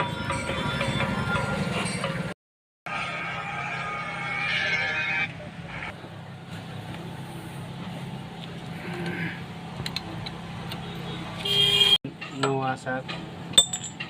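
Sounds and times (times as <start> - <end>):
engine humming: 3.0 - 11.8.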